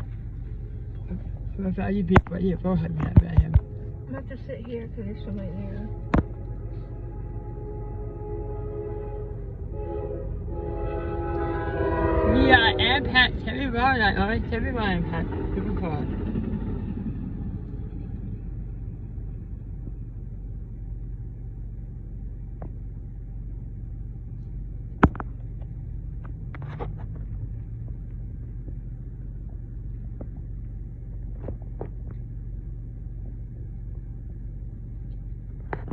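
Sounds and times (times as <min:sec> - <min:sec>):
low engine rumble: 0:00.0 - 0:35.9.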